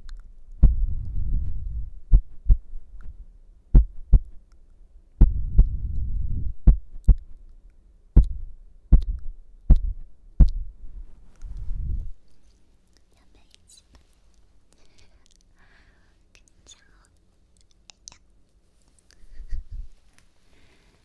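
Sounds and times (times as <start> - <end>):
heartbeat thumps: 0.0 - 4.5, 5.2 - 7.5, 8.1 - 12.2, 19.4 - 20.0
low rumble: 0.0 - 12.4, 19.4 - 20.0.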